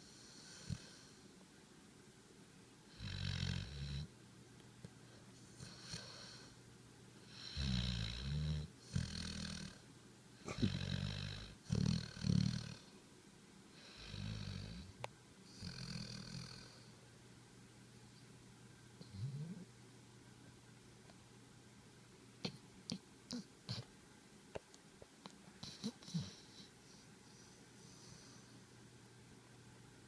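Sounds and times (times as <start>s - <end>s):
pet snoring: 2.9s - 4.1s, 7.3s - 9.8s, 10.4s - 12.9s, 13.8s - 16.8s, 19.0s - 19.7s, 25.6s - 26.7s.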